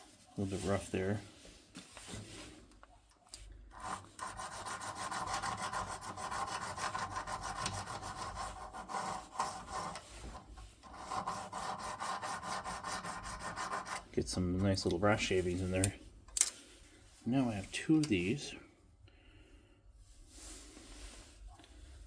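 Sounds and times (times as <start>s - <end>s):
file rasping on brass: 3.7s - 14.1s.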